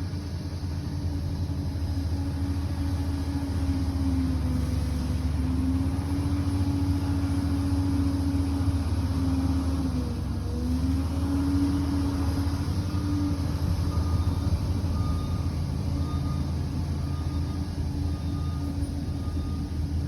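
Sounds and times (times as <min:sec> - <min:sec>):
bulldozer diesel engine running: 0:00.0 - 0:20.0
reversing alarm beeping: 0:12.9 - 0:20.0.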